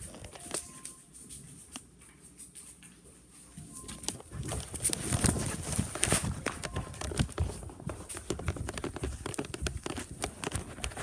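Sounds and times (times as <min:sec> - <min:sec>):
rapid irregular thumps and knocks: 0:04.0 - 0:11.0.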